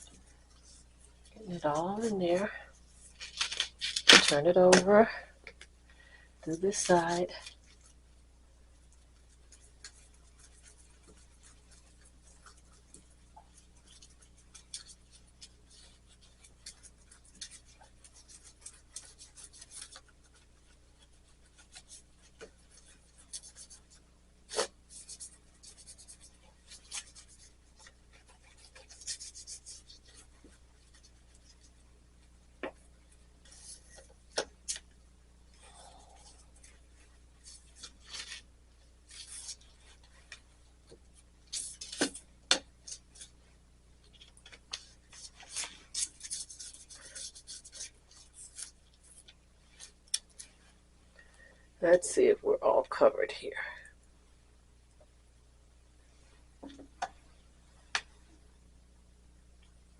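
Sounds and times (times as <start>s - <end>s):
toothbrush scratching on glass: 28.2s - 30.4s, 45.1s - 49.2s.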